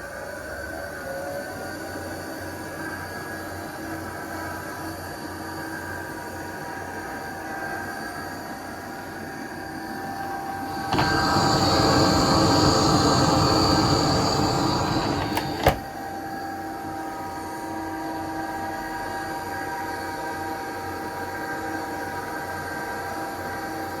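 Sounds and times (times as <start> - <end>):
fan motor high whining squeal: 5.8 - 22.7
steady machine hum: 9.6 - 16.4.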